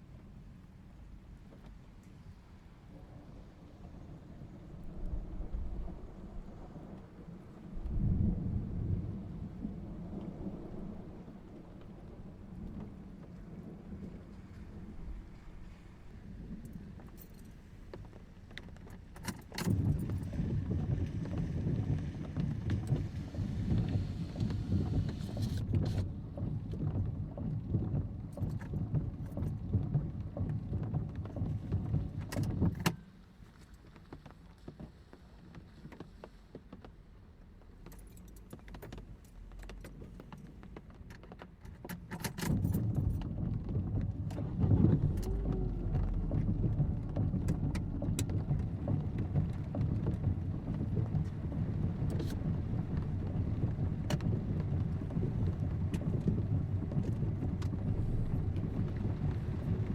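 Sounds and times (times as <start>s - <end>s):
rain falling: 2.5s - 32.7s, 42.5s - 59.9s.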